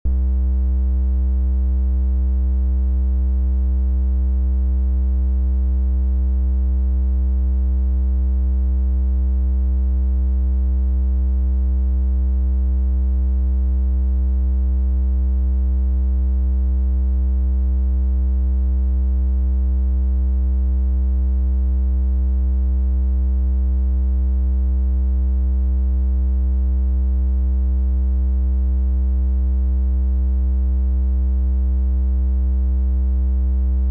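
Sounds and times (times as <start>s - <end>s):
steady low synth hum: 0.0s - 0.5s, 33.7s - 33.9s.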